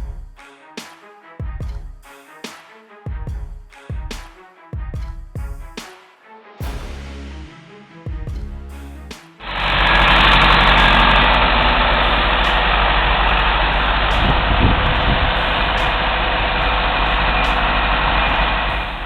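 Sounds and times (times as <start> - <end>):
music: 0.0 - 13.4, 14.0 - 19.0
diesel engine rumbling: 9.4 - 19.0.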